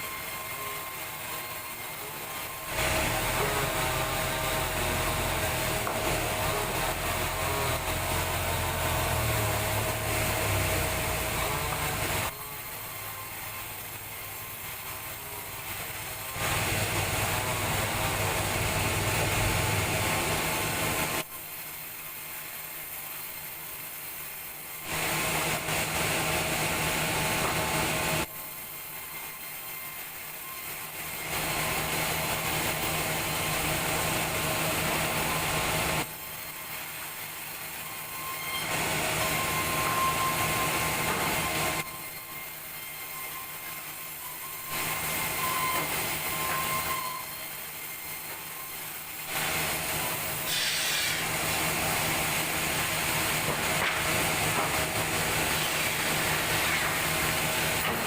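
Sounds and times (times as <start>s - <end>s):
sawmill saw cutting timber: 0.0s - 58.0s.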